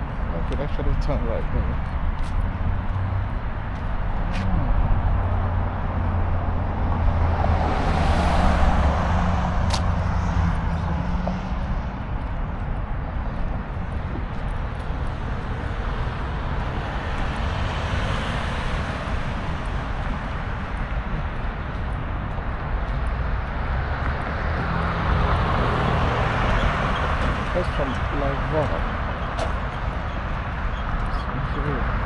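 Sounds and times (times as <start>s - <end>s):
road traffic rumble: 0.0s - 32.0s.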